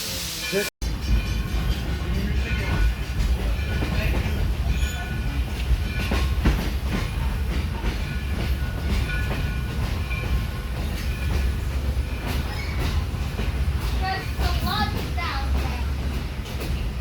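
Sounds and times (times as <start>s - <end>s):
train coaches rumbling: 0.0s - 17.0s
wheels clacking over rail joints: 0.8s - 17.0s
running gear squeaks: 12.4s - 13.0s.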